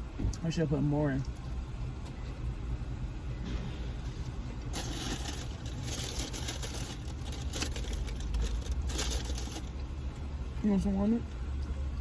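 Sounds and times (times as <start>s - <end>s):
plastic container crinkling: 4.8s - 9.8s.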